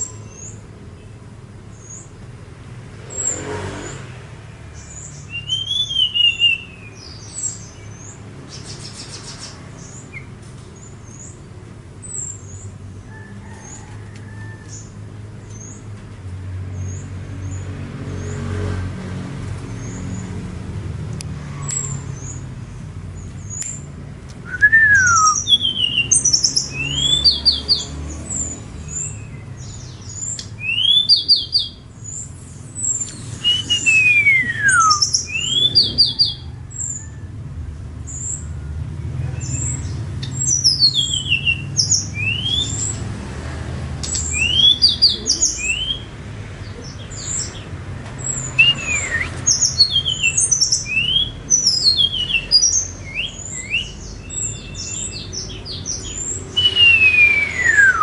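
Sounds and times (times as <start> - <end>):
songbird chirping and whistling: 4.8 - 11.3, 24.4 - 37.1, 39.4 - 43.0, 44.0 - 46.1, 48.2 - 58.0.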